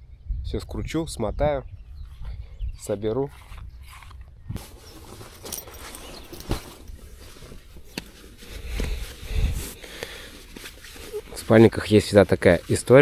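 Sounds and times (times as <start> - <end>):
sleeping bag rustling: 3.4 - 13.0.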